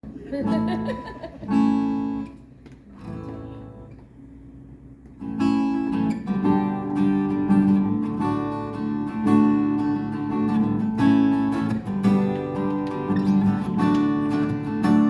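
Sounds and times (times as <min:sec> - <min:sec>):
acoustic guitar strumming: 0:00.4 - 0:04.2, 0:05.2 - 0:15.0.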